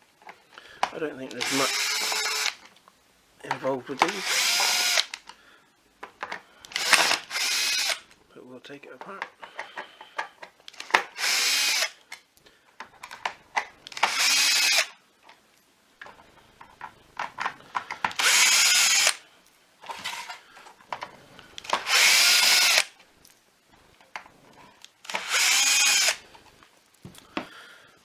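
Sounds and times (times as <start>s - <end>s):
electric drill whirring: 1.3s - 2.7s, 3.9s - 5.3s, 6.6s - 8.2s, 10.7s - 12.1s, 13.8s - 15.0s, 18.0s - 19.2s, 19.9s - 20.4s, 21.6s - 23.0s, 25.0s - 26.3s
handling clicks and knocks: 8.9s - 11.2s, 16.0s - 18.2s.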